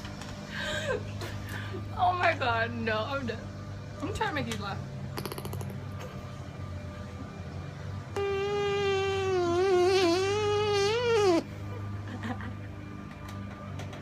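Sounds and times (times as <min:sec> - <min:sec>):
squeaky fart sound effect: 0:08.2 - 0:11.5.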